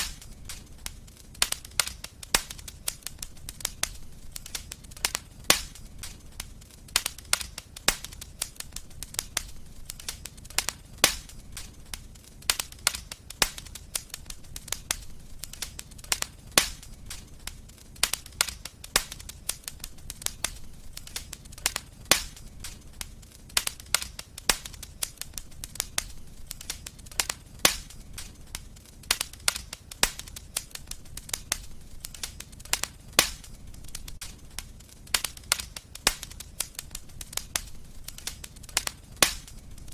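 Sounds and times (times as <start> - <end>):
low rumble of flames: 0.0 - 39.9
wood fire crackling: 0.0 - 39.9.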